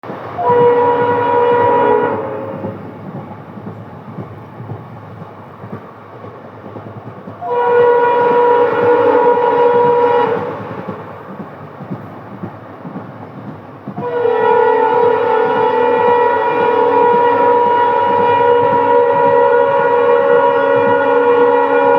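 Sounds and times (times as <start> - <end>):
train rumble: 0.0 - 21.9
wheels clicking over rail joints: 0.0 - 21.9
locomotive horn chord: 0.4 - 2.8, 7.4 - 10.7, 14.0 - 21.9.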